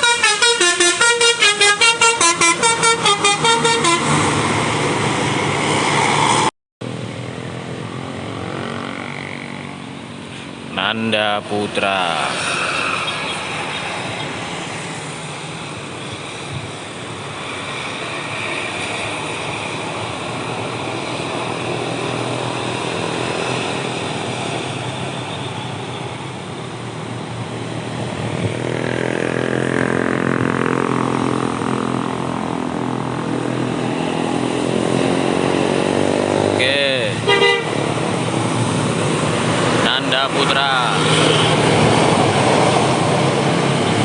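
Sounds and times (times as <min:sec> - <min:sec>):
diesel bus engine droning: 0:00.0 - 0:05.7, 0:15.0 - 0:44.0.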